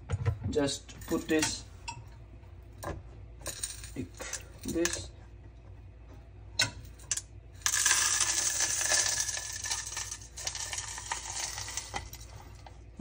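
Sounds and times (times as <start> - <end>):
salt crystals rattling through funnel: 7.6 - 12.6.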